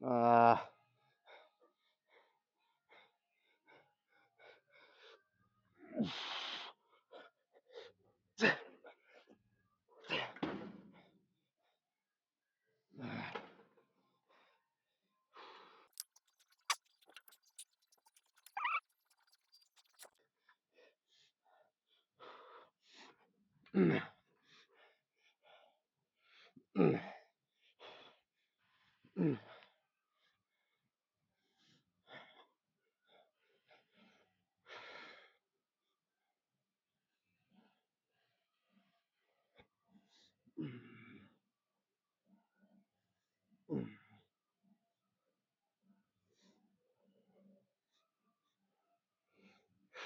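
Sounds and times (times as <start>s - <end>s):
man breathing hard: 6.0s - 7.2s.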